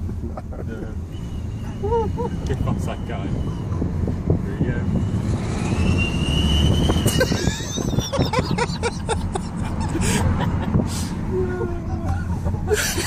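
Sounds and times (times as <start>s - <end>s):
car engine accelerating: 0.0s - 13.0s
road noise: 0.0s - 13.0s
exhaust turbo whistle: 1.1s - 3.8s, 4.9s - 7.3s.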